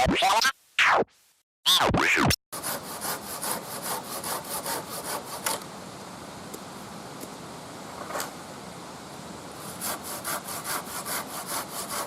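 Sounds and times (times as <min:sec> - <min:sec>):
hand saw cutting wood: 0:02.6 - 0:05.6, 0:09.6 - 0:12.0.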